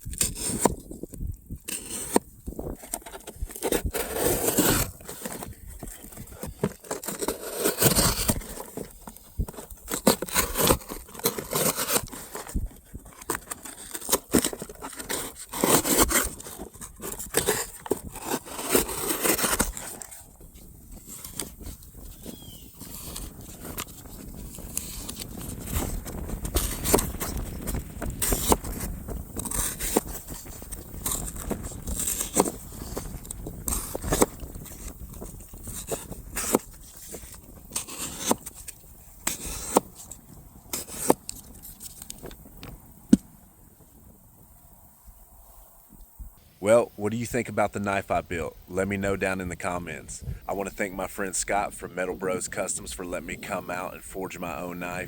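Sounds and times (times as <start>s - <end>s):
knife cutting and scraping: 0.0s - 42.2s
rustling handling noise: 0.8s - 29.1s.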